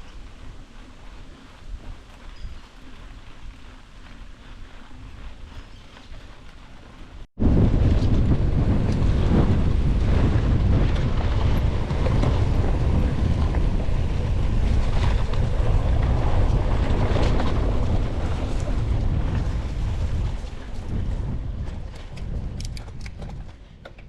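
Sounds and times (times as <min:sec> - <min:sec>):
wind buffeting microphone: 0:00.0 - 0:24.0
bike rattling and knocking: 0:05.5 - 0:24.0.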